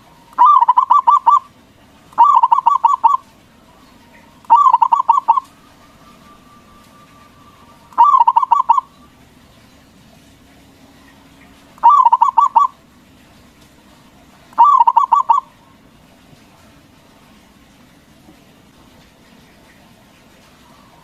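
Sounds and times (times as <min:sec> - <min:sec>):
dove cooing: 0:00.0 - 0:09.2, 0:11.8 - 0:12.8, 0:14.5 - 0:15.8.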